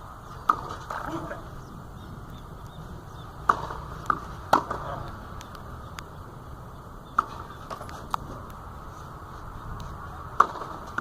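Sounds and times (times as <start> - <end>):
low rumble: 0.0 - 10.4
tennis ball pops: 0.4 - 1.3, 3.4 - 6.1, 7.1 - 8.6, 9.8 - 11.0.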